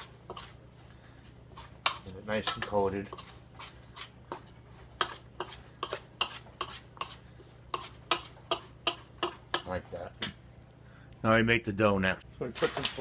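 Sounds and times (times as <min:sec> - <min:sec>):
spoon scraping a mixing bowl: 0:00.0 - 0:00.9, 0:01.5 - 0:09.9.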